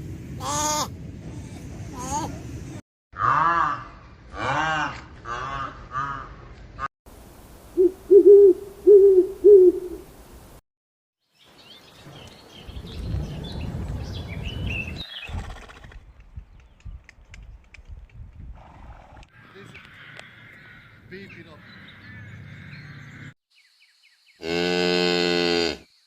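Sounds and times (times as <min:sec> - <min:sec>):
owl hooting: 0:07.8 - 0:10.1
low rumble: 0:12.6 - 0:15.0.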